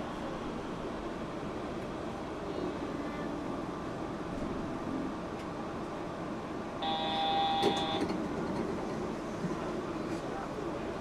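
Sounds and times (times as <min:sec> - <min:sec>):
train car hum and rumble: 0:00.0 - 0:11.0
electronic chime tone: 0:06.8 - 0:08.0.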